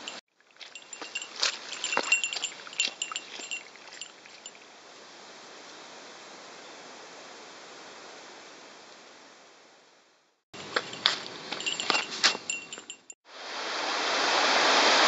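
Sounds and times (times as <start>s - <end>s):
light clinks: 0.0s - 4.6s, 10.6s - 13.2s
stream water rushing: 0.0s - 4.7s, 13.3s - 15.0s
quick clicking footsteps: 0.6s - 4.1s, 10.6s - 13.2s.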